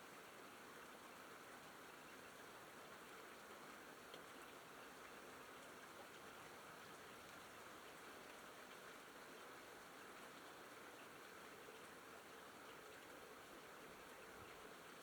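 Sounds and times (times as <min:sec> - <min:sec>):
faint raindrop ticks: 0:04.0 - 0:04.6.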